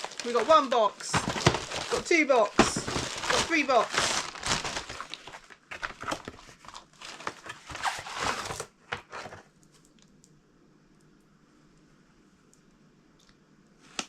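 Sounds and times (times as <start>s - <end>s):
packaging crinkling and rustling: 0.0s - 10.0s.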